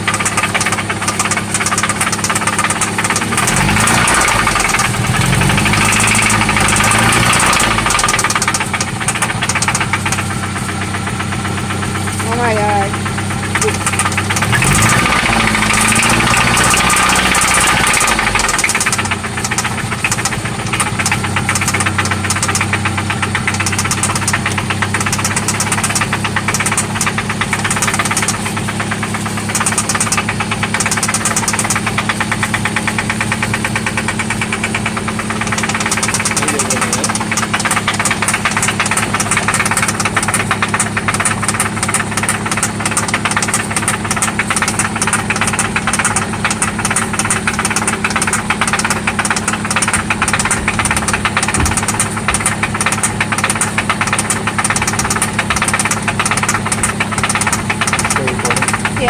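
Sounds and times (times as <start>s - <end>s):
car engine knocking: 0.0s - 59.0s.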